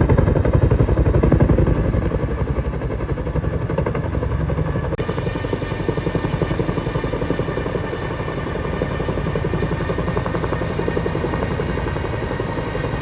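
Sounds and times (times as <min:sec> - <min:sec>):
machine running with pulsing beat: 0:11.5 - 0:13.0.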